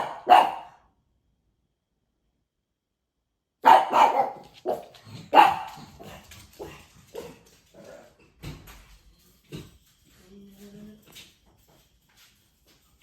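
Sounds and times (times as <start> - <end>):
dog barking: 0.0 - 0.8, 3.6 - 7.3.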